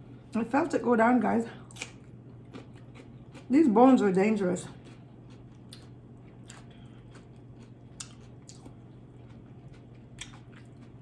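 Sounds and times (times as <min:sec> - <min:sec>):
chewing and biting fried fish: 0:01.6 - 0:03.6, 0:04.7 - 0:11.0.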